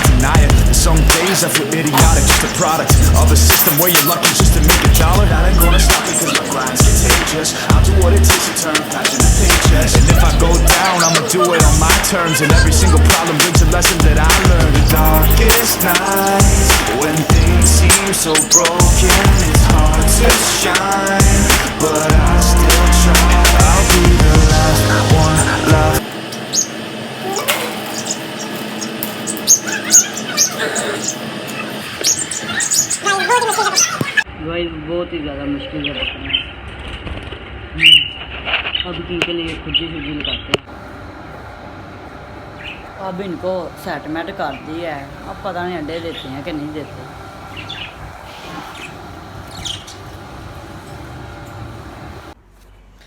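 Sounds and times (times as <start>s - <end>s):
steady background hum: 0.0s - 53.0s
parrots squeaking and chirping: 2.2s - 6.9s, 8.9s - 13.6s, 14.3s - 19.5s, 26.3s - 34.3s, 47.5s - 50.2s.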